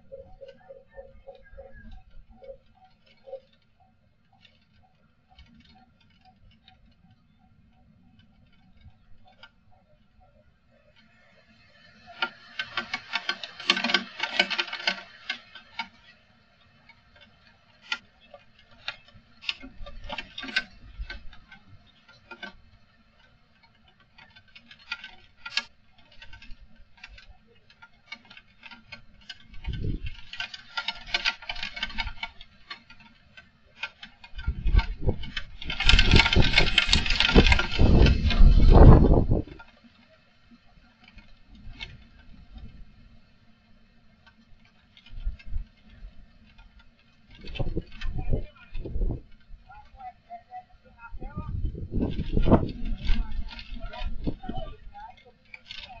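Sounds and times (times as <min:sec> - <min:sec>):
things rattling in wind: 0:00.0 - 0:56.0
wind buffeting microphone: 0:29.5 - 0:30.3, 0:34.4 - 0:39.6, 0:47.4 - 0:49.9, 0:51.0 - 0:55.0
strong wind gusting: 0:34.5 - 0:39.5, 0:51.0 - 0:54.9.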